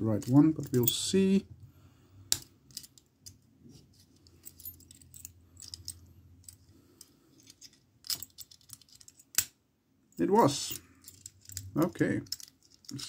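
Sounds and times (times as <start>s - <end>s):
keys jingling: 4.2s - 6.7s, 7.3s - 9.4s, 10.6s - 13.0s.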